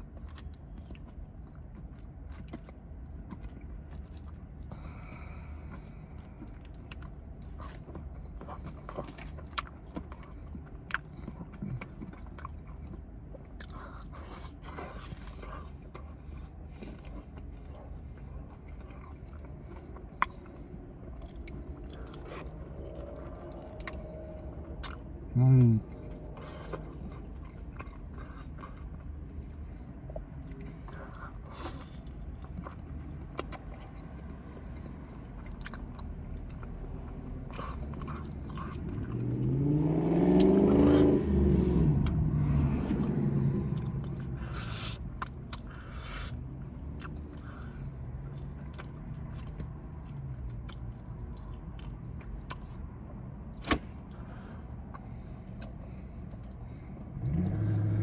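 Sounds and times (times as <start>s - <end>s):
chewing and biting food: 0.0s - 58.0s
car passing: 19.7s - 31.3s, 32.3s - 52.2s, 53.6s - 58.0s.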